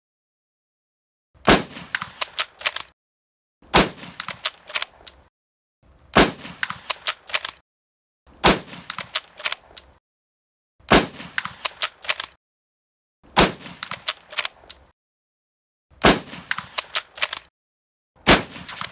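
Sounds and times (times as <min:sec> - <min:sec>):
rifle shots: 0:01.4 - 0:02.8, 0:03.7 - 0:04.8, 0:06.2 - 0:07.5, 0:08.4 - 0:09.5, 0:10.9 - 0:12.3, 0:13.4 - 0:14.2, 0:16.0 - 0:17.4, 0:18.2 - 0:18.9
rifle bolt metallic clicks: 0:01.9 - 0:02.9, 0:04.2 - 0:05.3, 0:06.6 - 0:07.6, 0:08.3 - 0:10.0, 0:11.4 - 0:12.4, 0:13.7 - 0:14.9, 0:16.5 - 0:17.5, 0:18.7 - 0:18.9.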